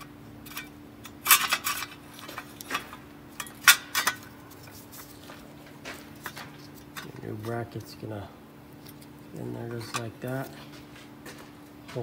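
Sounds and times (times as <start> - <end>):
metal parts clinking and clanking: 0.0 - 4.6
faint steady hum: 0.0 - 12.0.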